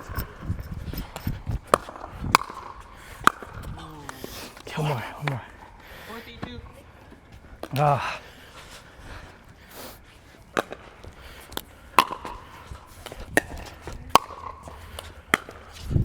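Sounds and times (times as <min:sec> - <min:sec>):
paddles striking a ball: 0:00.0 - 0:05.4, 0:06.4 - 0:08.0, 0:10.5 - 0:16.0.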